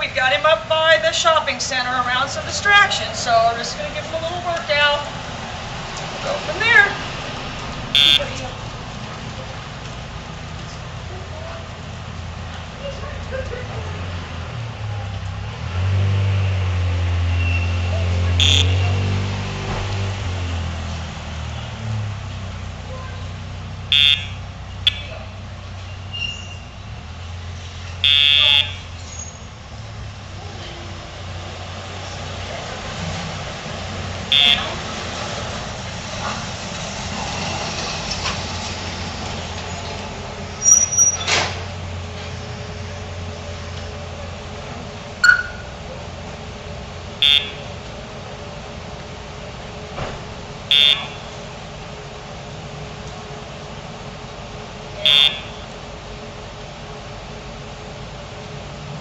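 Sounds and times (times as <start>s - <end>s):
background traffic noise: 0.0s - 59.0s
vehicle engine passing: 0.0s - 59.0s
short electronic beep: 8.0s - 8.3s, 18.4s - 18.8s, 45.2s - 45.8s
high squeak and clatter: 25.8s - 26.8s, 40.6s - 41.6s.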